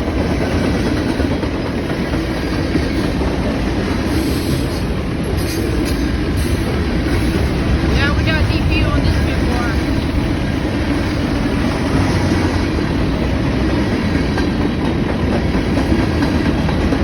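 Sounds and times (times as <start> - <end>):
train wheels on rails: 0.0 - 17.0.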